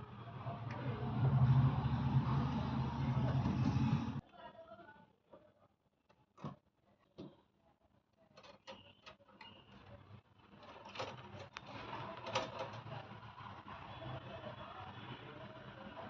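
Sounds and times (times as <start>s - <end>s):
machine running with low hum: 0.0s - 4.2s.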